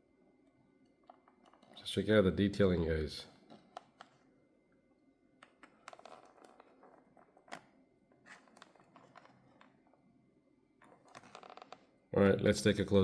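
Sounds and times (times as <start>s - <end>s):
small clicks handling toy car: 1.0s - 1.8s, 3.5s - 4.2s, 5.4s - 9.9s, 10.8s - 11.9s.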